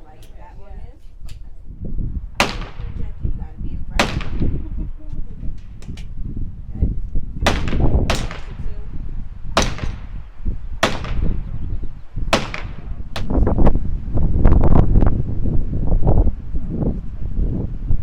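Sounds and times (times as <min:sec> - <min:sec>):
wind rumble on microphone: 0:00.0 - 0:18.0
gunshots with echo: 0:02.4 - 0:03.2, 0:04.0 - 0:04.9, 0:07.4 - 0:13.5.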